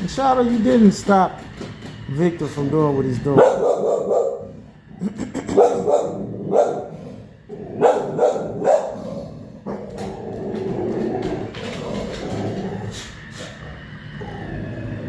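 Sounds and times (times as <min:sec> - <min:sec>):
dog barking: 0:03.4 - 0:04.6, 0:05.5 - 0:07.0, 0:07.8 - 0:10.1.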